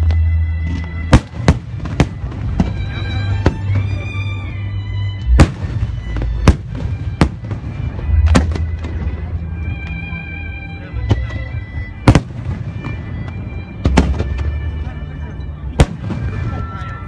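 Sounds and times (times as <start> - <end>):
music playing: 0.0 - 17.0
fireworks bursting with sharp bangs: 0.7 - 4.0, 5.2 - 9.3, 11.1 - 14.6, 15.8 - 17.0.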